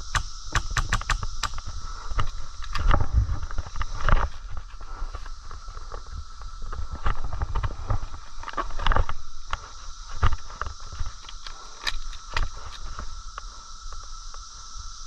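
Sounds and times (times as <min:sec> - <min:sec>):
sharp clicks and knocks: 0:00.0 - 0:03.0
steady high hiss: 0:00.0 - 0:15.0.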